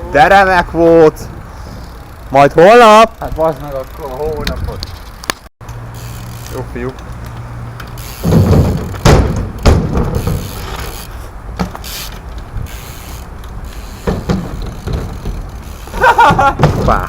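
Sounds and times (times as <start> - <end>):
bike thumps and clattering knocks: 7.1 - 17.0.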